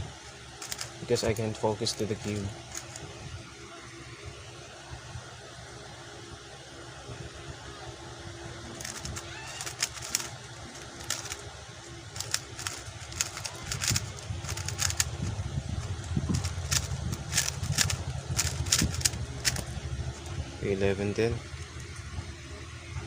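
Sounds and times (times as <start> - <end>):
steady low hum: 0.0 - 23.0
speed cube plastic clicks: 0.6 - 1.5, 2.2 - 3.0, 8.8 - 11.4, 12.2 - 19.7.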